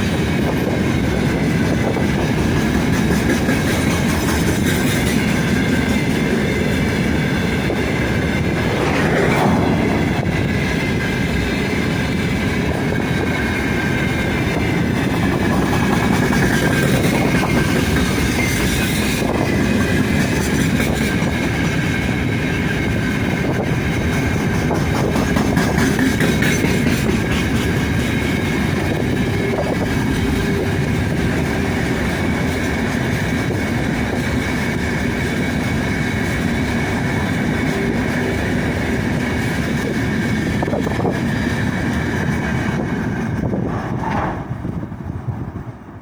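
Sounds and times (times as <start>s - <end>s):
freight wagons rumbling: 0.0s - 34.6s
wheels clacking over rail joints: 0.0s - 45.0s.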